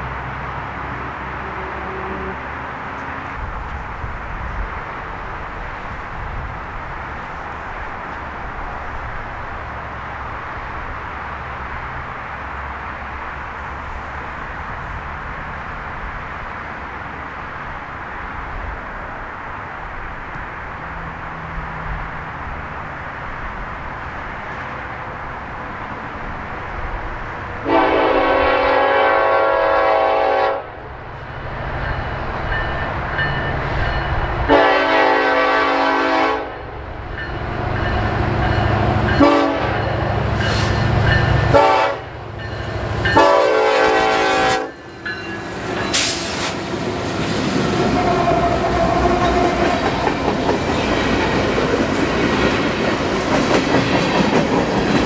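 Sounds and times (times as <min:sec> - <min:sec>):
train wheels rumbling on rails: 0:00.0 - 0:29.8, 0:30.8 - 0:55.0
locomotive air horn blasts: 0:01.0 - 0:02.6, 0:27.6 - 0:30.8, 0:34.5 - 0:36.6, 0:39.2 - 0:40.8, 0:41.4 - 0:42.2, 0:42.8 - 0:44.8, 0:45.9 - 0:46.6.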